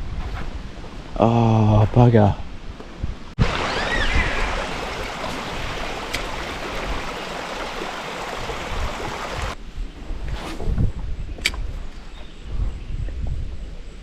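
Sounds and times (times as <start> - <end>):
rushing creek water: 3.4 - 9.6.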